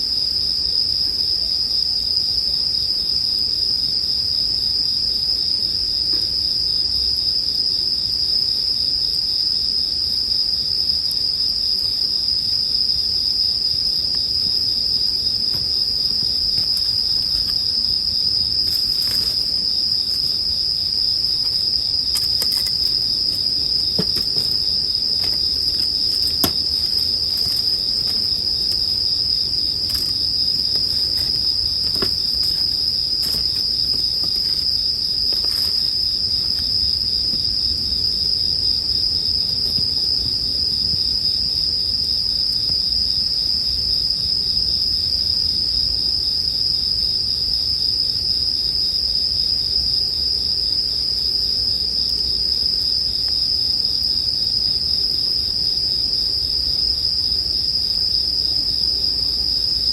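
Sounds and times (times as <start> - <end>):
crickets chirping chorus: 0.0 - 59.9
campfire crackling: 15.4 - 36.1.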